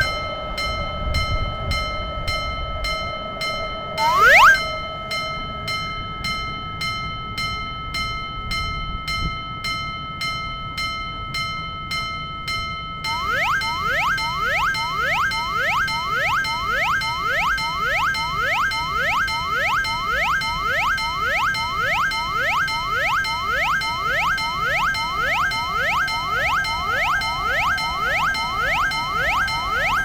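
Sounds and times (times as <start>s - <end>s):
rising electronic glides: 4.0s - 4.6s, 13.1s - 25.2s.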